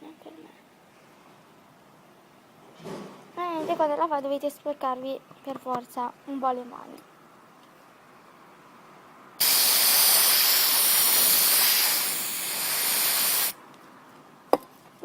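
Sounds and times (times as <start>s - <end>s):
loud hiss: 9.4s - 13.6s.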